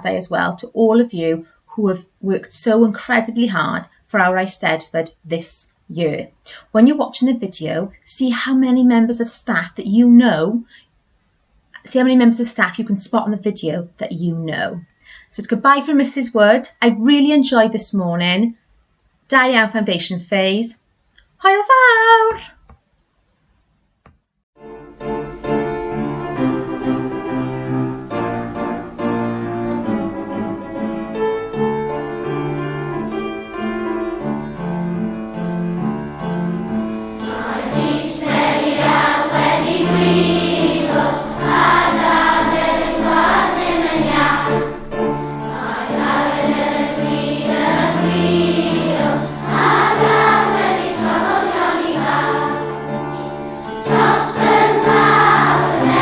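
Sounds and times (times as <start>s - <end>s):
instrumental music: 24.6s - 56.0s
choir singing: 36.5s - 56.0s.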